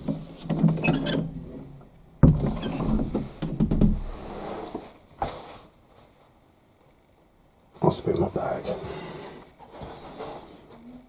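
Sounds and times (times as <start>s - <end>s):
wooden door creaking and rattling: 0.5s - 1.4s, 2.2s - 4.3s
door thud: 2.2s - 4.2s.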